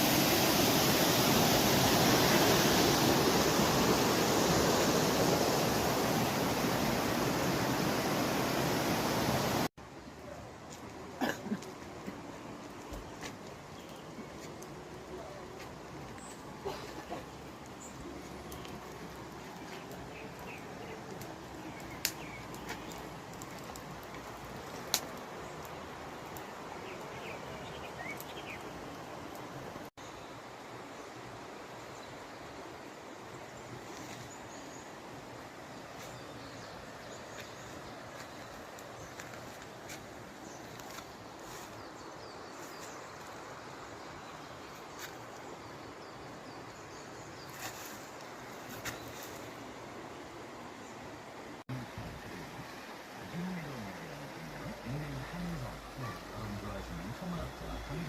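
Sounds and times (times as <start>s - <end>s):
water noise: 0.0s - 9.7s, 48.0s - 58.0s
rushing water: 0.0s - 58.0s
small birds chirping: 12.4s - 29.4s, 51.7s - 58.0s
faint bird chirps: 51.7s - 58.0s.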